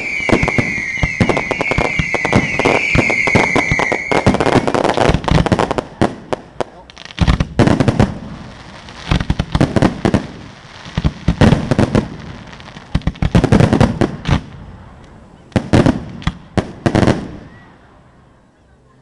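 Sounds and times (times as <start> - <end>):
fireworks bursting: 0.0 - 17.8.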